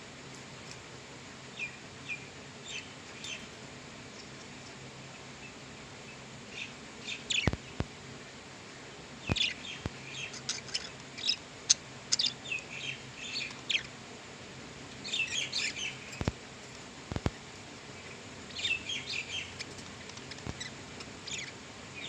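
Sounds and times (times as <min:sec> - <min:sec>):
budgerigars chirping: 0:09.3 - 0:13.9, 0:15.0 - 0:16.3, 0:18.0 - 0:22.0.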